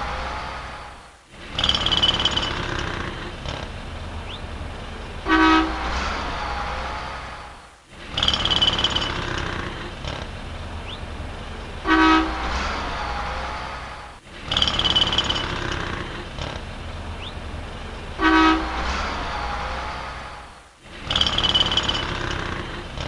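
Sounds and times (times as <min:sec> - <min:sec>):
city street traffic: 0:00.0 - 0:23.0
car horn honk: 0:05.2 - 0:06.0, 0:11.8 - 0:12.6, 0:18.2 - 0:18.9.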